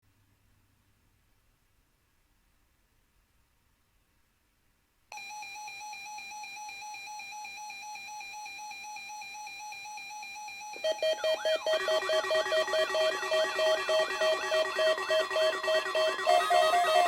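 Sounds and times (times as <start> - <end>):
pulsing alarm tone: 6.8 - 17.0
buzzy electronic tone: 10.8 - 17.0.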